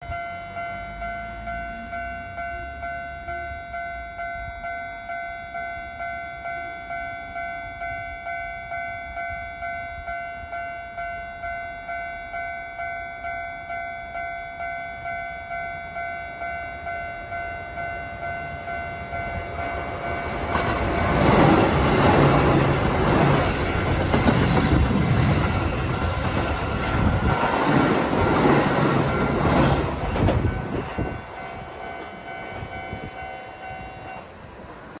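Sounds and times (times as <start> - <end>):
train rumbling past: 15.8 - 35.0.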